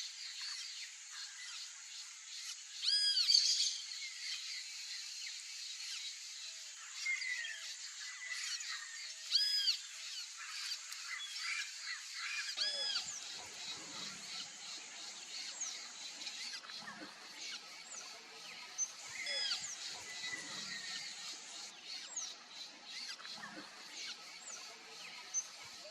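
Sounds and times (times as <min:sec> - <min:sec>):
birds chirping and calling: 0:06.8 - 0:25.9
loud arched bird calls: 0:08.2 - 0:25.9
steady high hiss: 0:09.0 - 0:25.9.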